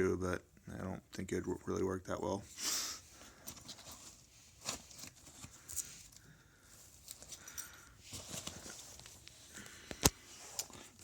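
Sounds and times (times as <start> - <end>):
backpack rustling: 3.1 - 11.0.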